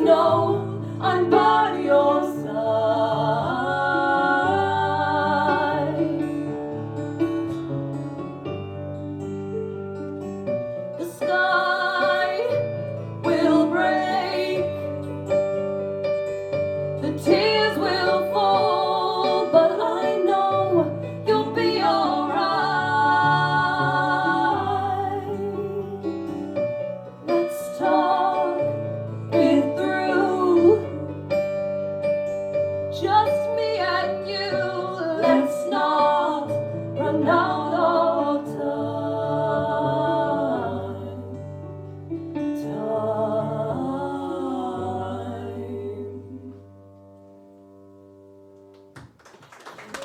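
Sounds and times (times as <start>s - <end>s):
women singing: 0.0s - 6.5s, 11.0s - 15.2s, 17.0s - 26.4s, 27.2s - 31.4s, 32.9s - 41.5s, 42.5s - 46.8s
strummed acoustic guitar: 4.1s - 11.2s.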